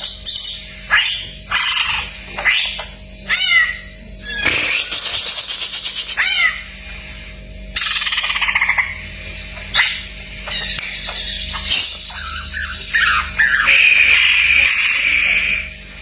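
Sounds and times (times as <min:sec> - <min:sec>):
bird singing varied song: 0:09.8 - 0:15.7.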